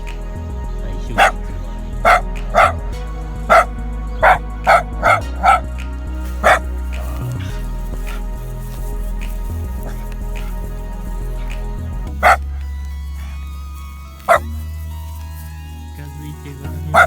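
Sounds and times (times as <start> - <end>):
background music: 0.0 - 17.0
puppy barking: 1.2 - 1.4, 2.0 - 2.8, 3.5 - 5.6, 6.4 - 6.6.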